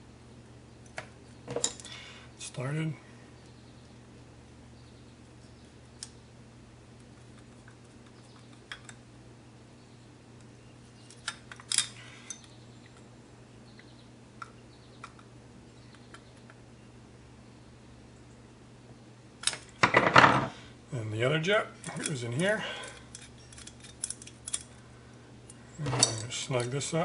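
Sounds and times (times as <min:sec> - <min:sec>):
small metal parts clicking: 0:11.0 - 0:13.0, 0:22.8 - 0:24.8.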